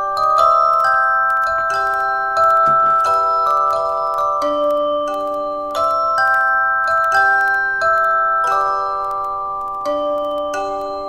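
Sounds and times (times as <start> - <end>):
glockenspiel-style mallet chords: 0.0 - 11.0.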